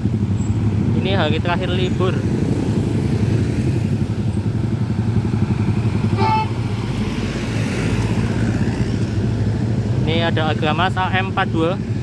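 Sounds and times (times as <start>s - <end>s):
heavy road traffic rumble: 0.0s - 12.0s
motorcycle engines passing: 0.0s - 12.0s
short horn beep: 6.1s - 6.5s.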